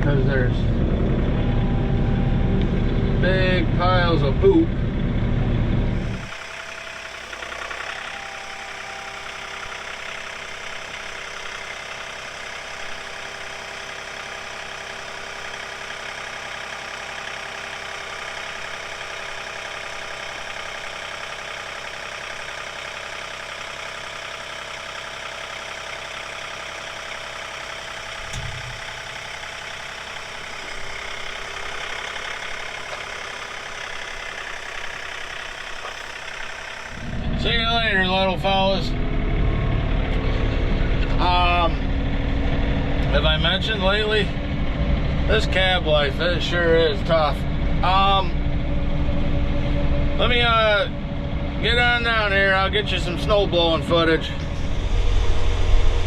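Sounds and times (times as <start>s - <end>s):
tractor diesel engine running: 0.0s - 56.0s
low thud: 28.3s - 28.8s.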